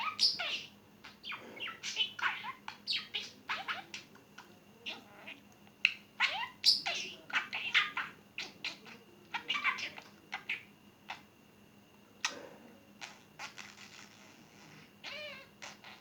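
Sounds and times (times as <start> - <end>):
budgerigar warbling call: 0.0 - 3.9
budgerigar chirping: 0.0 - 4.1, 4.9 - 11.2.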